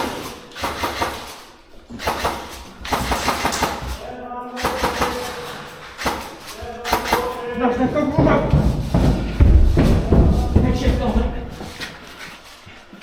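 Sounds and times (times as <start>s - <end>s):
airsoft gunfire bursts: 0.0s - 4.0s, 4.6s - 7.5s
person speaking: 3.9s - 12.0s.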